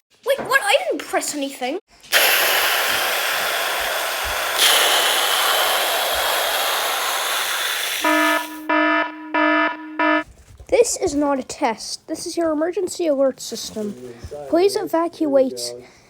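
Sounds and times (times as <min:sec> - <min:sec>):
static hiss: 0:02.1 - 0:08.7
buzzer alert tone beeping: 0:08.0 - 0:10.2.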